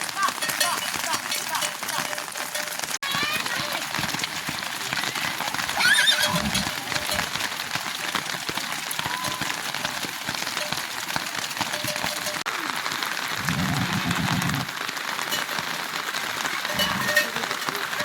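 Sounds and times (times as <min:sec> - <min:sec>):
heavy rain: 0:00.0 - 0:18.0.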